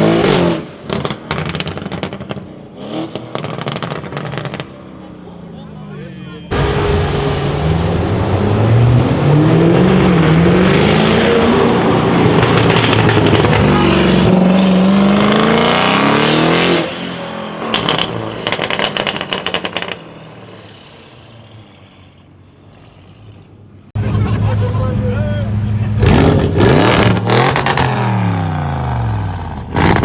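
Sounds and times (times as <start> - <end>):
car engine accelerating hard: 6.5 - 18.7, 24.0 - 30.0.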